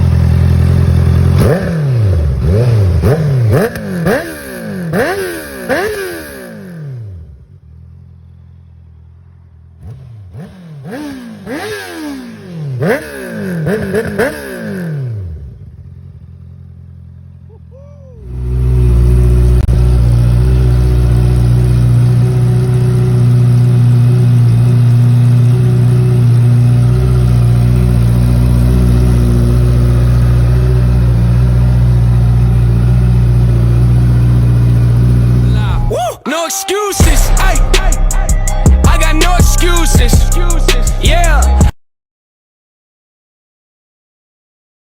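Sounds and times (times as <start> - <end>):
motorcycle engine revving: 0.0 - 35.9.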